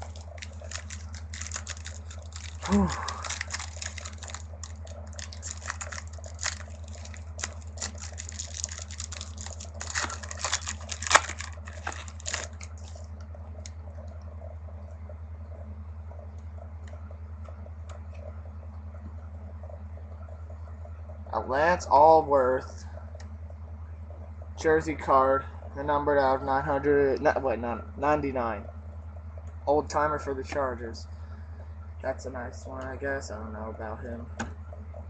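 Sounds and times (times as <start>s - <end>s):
card pack wrapper crinkling: 0.0s - 13.1s
steady low hum: 0.0s - 35.0s.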